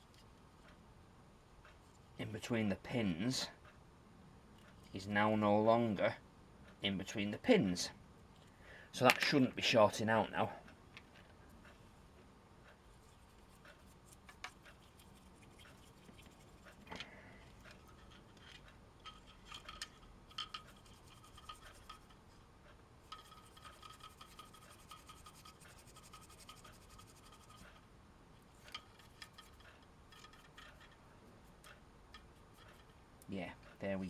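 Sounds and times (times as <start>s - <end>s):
tool scratching circuit board: 23.1s - 27.8s.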